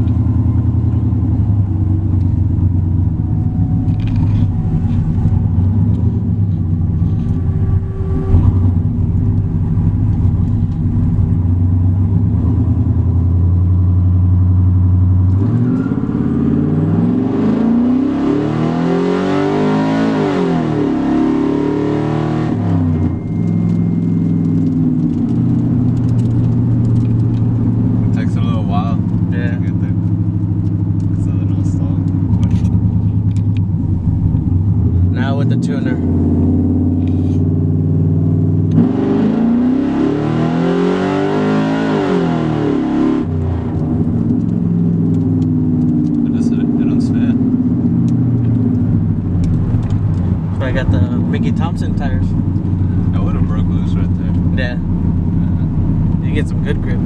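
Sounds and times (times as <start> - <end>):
truck engine revving: 15.2 - 57.0.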